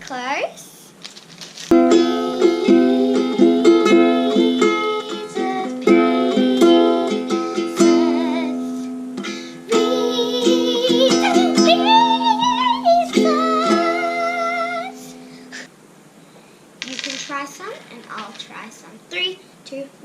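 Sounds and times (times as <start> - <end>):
wavering melody: 1.7 - 8.4, 9.7 - 15.4
plucked strings: 1.7 - 15.2.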